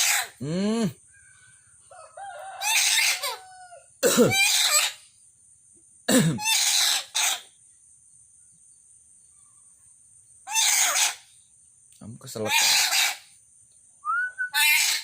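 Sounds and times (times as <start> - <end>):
parrot imitating coughing: 4.0 - 4.9, 6.1 - 7.0.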